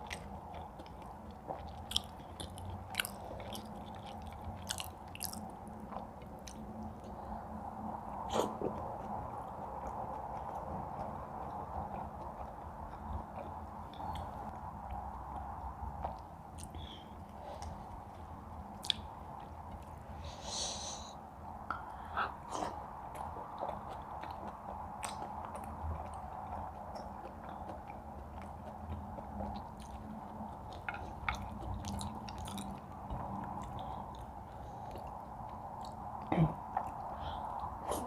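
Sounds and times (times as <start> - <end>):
background hum: 0.0 - 38.0
people chewing and eating: 0.0 - 38.0.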